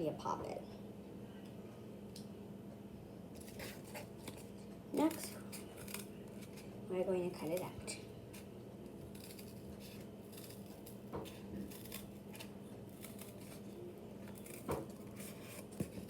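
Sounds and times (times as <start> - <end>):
faint steady hum: 0.0 - 16.0
scissors cutting cardboard: 3.4 - 6.7, 8.3 - 16.0.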